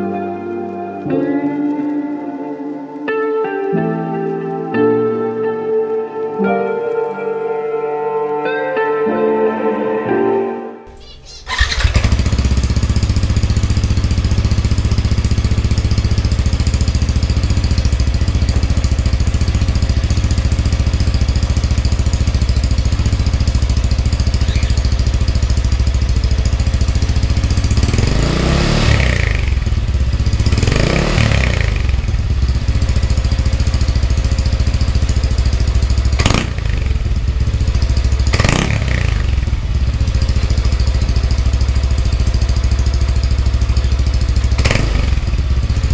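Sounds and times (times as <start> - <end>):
scooter engine idling: 11.0 - 45.9
scooter engine revving: 11.0 - 45.9.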